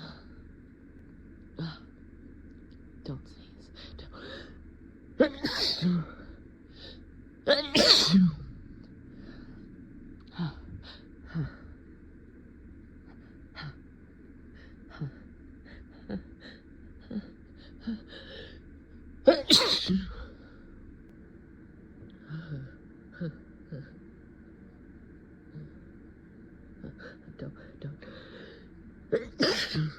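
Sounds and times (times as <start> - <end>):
person sneezing: 5.2 - 6.1, 7.5 - 8.4, 19.3 - 20.3, 29.2 - 29.9.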